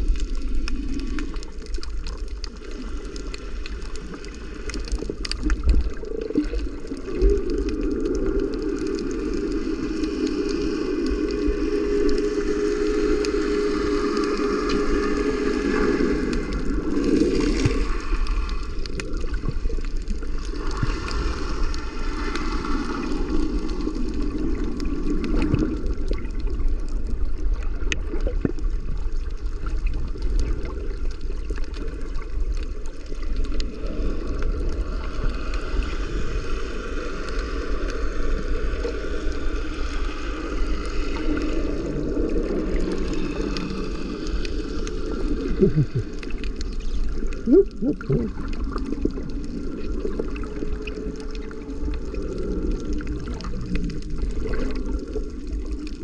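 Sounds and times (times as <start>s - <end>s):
water gurgling and sloshing: 0.0s - 56.0s
low rumble: 40.1s - 56.0s.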